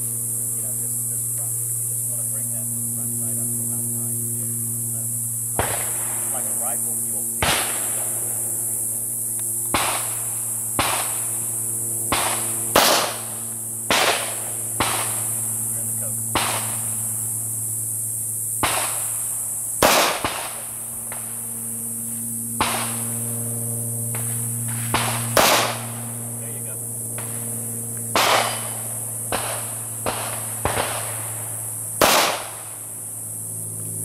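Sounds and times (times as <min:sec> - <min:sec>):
steady low hum: 0:00.0 - 0:34.0
gunshots: 0:05.6 - 0:06.5, 0:07.4 - 0:08.3, 0:09.7 - 0:11.4, 0:12.1 - 0:15.4, 0:16.3 - 0:16.9, 0:18.6 - 0:19.2, 0:19.8 - 0:21.3, 0:22.6 - 0:23.1, 0:24.1 - 0:26.0, 0:28.1 - 0:32.8.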